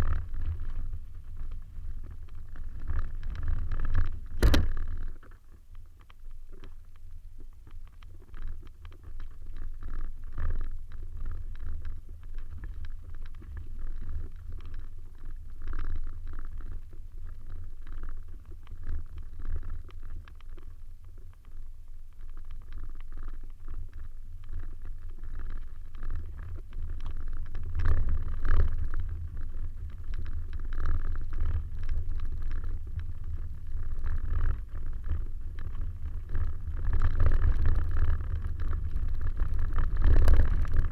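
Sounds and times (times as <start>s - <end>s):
car driving over rough ground: 0.0s - 5.4s, 26.1s - 40.9s.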